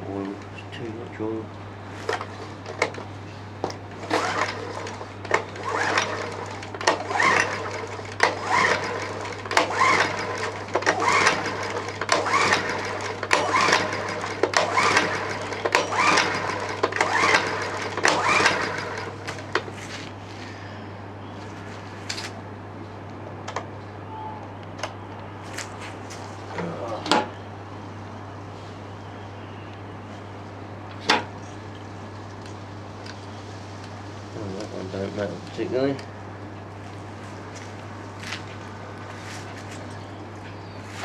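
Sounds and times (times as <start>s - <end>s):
generator engine turning over: 3.7s - 19.7s.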